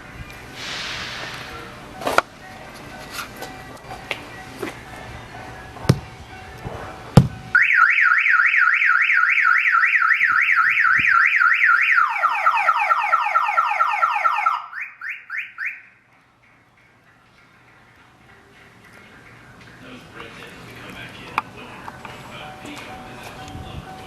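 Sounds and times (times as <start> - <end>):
sharp knocks: 6.7 - 7.6
car alarm siren: 7.3 - 16.0.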